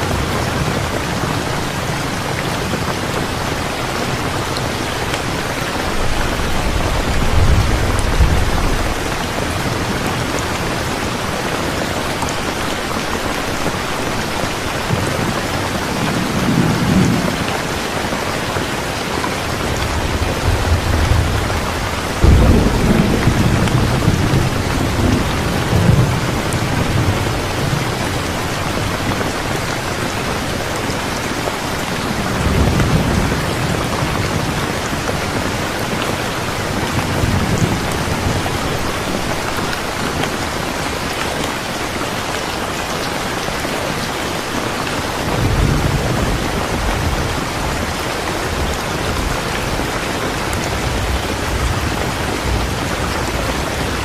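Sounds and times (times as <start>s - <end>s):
thunder rumbling: 0.0s - 11.4s, 14.7s - 31.1s
steady rain: 0.0s - 54.0s.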